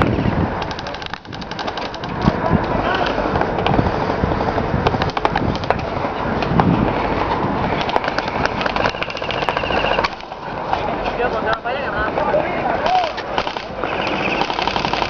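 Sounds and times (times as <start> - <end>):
airsoft guns firing: 0.6 - 2.2, 7.8 - 10.3, 12.8 - 15.0.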